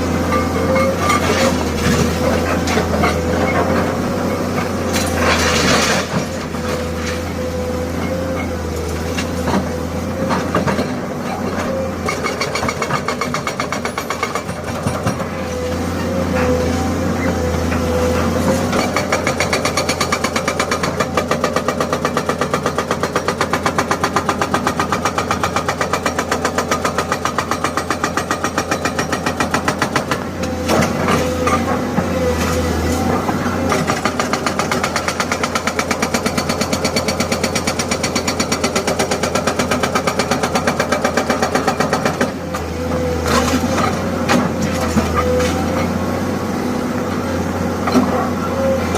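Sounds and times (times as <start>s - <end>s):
diesel engine running: 0.0s - 48.9s
hydraulic breaker hammering concrete: 12.1s - 15.3s, 18.4s - 32.4s, 33.6s - 43.1s.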